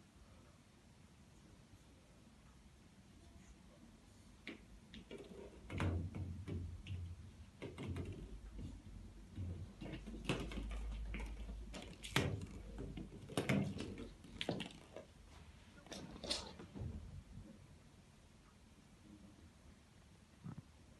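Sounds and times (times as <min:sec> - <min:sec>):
ball knocking on hard floor: 0:05.0 - 0:14.8.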